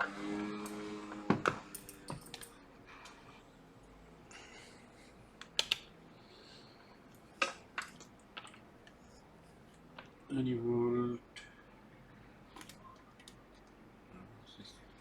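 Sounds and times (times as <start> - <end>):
small tools clicking and tapping: 1.4 - 3.2.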